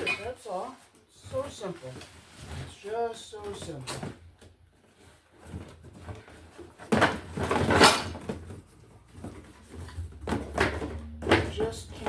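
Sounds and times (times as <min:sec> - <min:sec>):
small metal parts clattering: 0:07.0 - 0:08.4.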